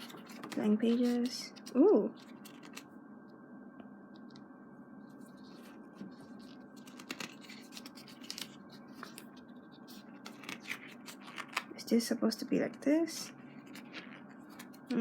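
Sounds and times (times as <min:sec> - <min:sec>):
paper pages rustling: 0:00.0 - 0:02.9, 0:05.1 - 0:11.8, 0:13.2 - 0:14.9.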